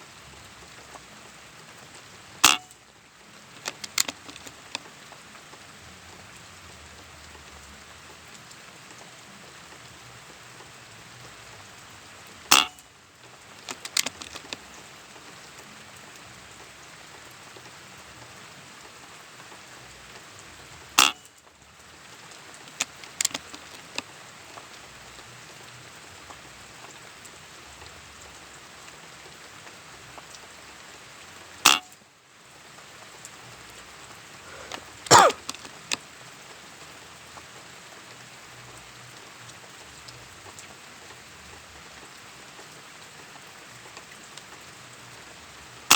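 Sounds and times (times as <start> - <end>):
steady rain falling: 0.0 - 45.9.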